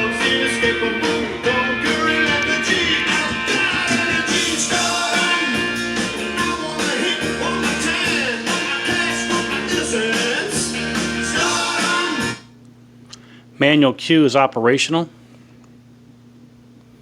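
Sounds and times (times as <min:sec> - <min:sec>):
song with guitar and singing: 0:00.0 - 0:12.5.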